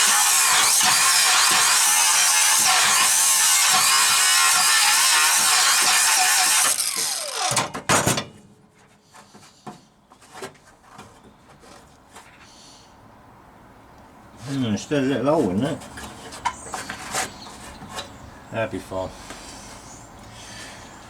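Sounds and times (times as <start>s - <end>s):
angle grinder grinding steel: 0.0s - 7.6s.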